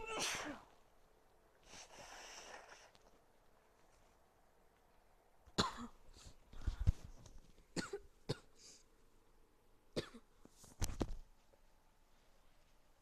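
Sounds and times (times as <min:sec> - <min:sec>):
person coughing: 0:05.6 - 0:06.0, 0:07.8 - 0:08.8.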